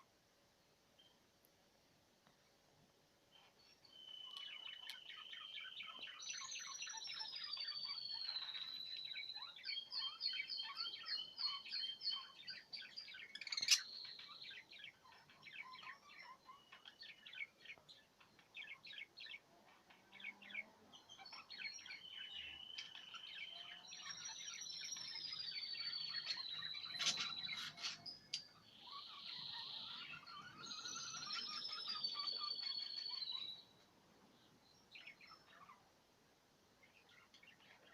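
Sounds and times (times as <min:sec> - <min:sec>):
budgerigars chirping and warbling: 0:04.5 - 0:33.6.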